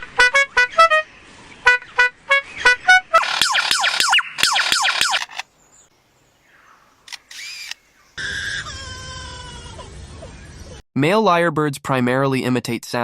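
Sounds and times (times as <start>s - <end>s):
lyrebird buzzing imitation: 3.2s - 5.4s
lyrebird laser zaps: 3.2s - 5.4s
lyrebird shutter click and whirr: 3.2s - 5.5s, 7.1s - 7.8s.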